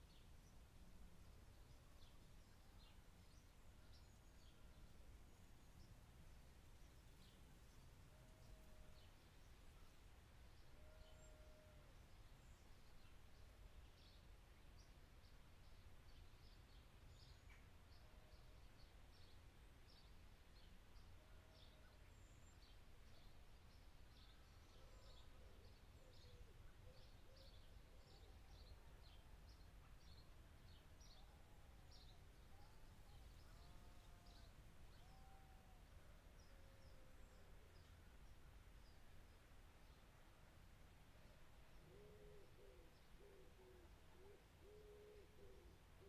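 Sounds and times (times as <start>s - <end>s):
lower rounded bird calls: 10.5s - 13.2s, 24.2s - 38.0s, 41.7s - 46.0s.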